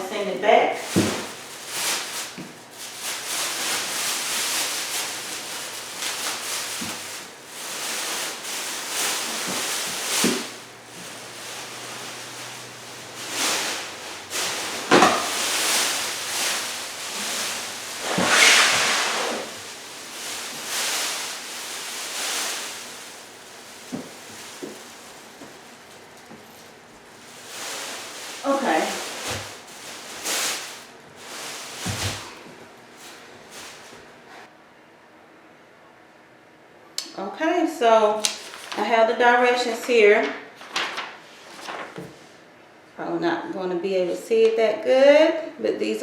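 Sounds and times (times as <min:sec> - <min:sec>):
packaging rustling and crinkling: 0:00.8 - 0:34.1, 0:38.2 - 0:38.9, 0:40.6 - 0:42.2.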